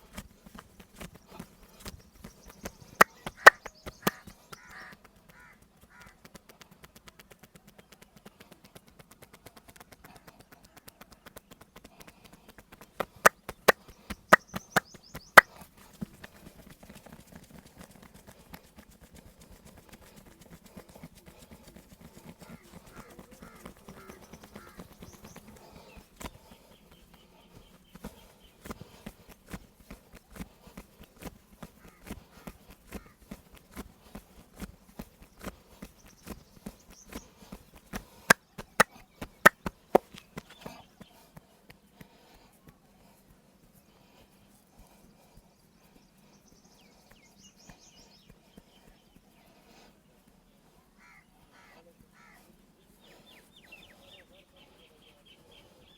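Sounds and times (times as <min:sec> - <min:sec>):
hands slapping a body: 0:00.0 - 0:05.4, 0:12.7 - 0:42.8
hands tapping a body: 0:00.0 - 0:43.3.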